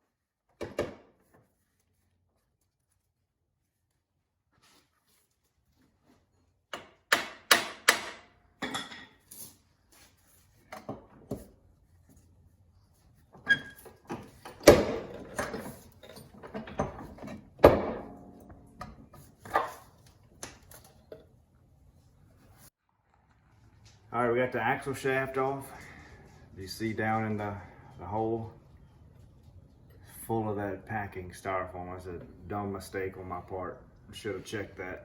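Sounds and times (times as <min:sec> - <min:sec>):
tools clanking on metal parts: 0:13.6 - 0:18.6.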